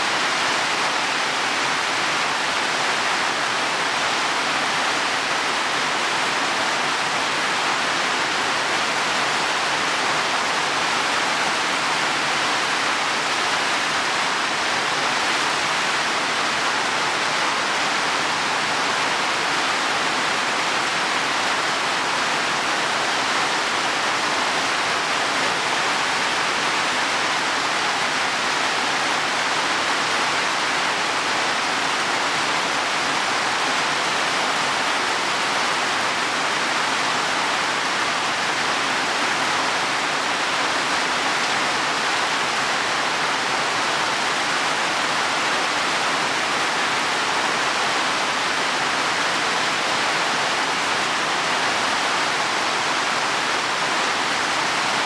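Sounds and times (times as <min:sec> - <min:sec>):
heavy rain on leaves: 0:00.0 - 0:55.0.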